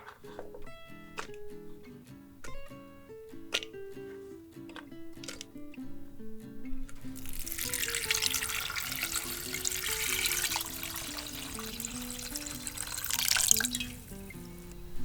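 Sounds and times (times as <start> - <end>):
acoustic guitar music: 0.0 - 15.0
water rushing stream: 7.2 - 14.7.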